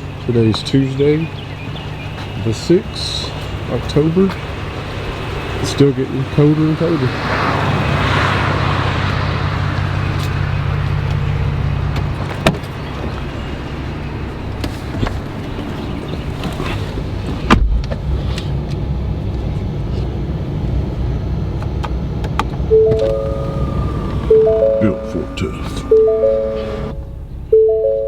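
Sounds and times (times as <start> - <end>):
car engine running: 0.0 - 28.0.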